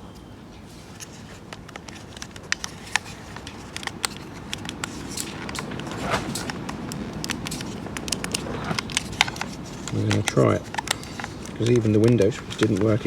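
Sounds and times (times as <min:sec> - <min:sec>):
rustle of handling: 0:00.0 - 0:13.0
plastic clicks and taps: 0:07.2 - 0:13.0.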